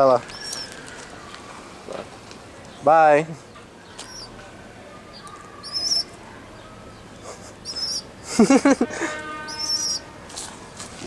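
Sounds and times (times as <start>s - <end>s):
bird chirping: 0.0s - 11.0s
voice-like call: 4.0s - 8.1s, 9.4s - 10.2s.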